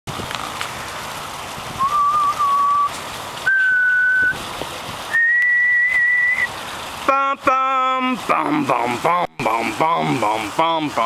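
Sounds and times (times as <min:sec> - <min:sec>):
person whistling long notes: 0:01.8 - 0:04.4, 0:05.1 - 0:06.5.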